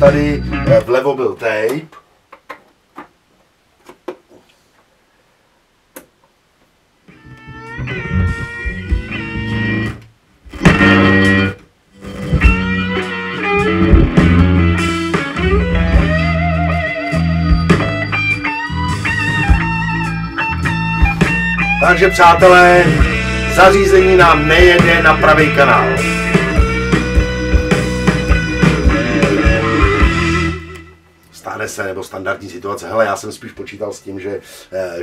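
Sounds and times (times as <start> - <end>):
guitar music through loudspeaker: 0.0 - 1.0, 7.1 - 31.0.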